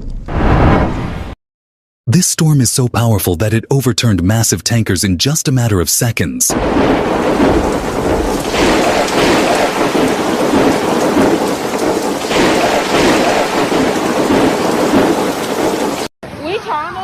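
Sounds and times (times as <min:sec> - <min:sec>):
heavy rain: 0:06.5 - 0:16.1
wind rushing: 0:06.5 - 0:16.1.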